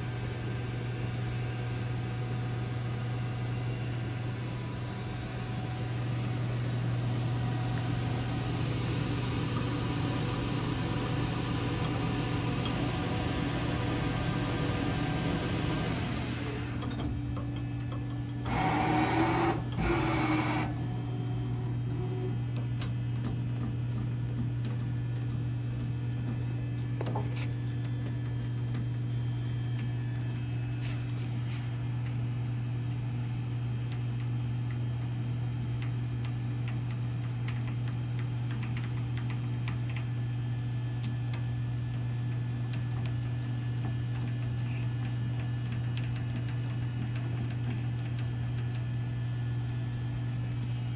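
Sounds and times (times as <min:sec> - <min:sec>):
lathe humming: 0:18.4 - 0:21.2.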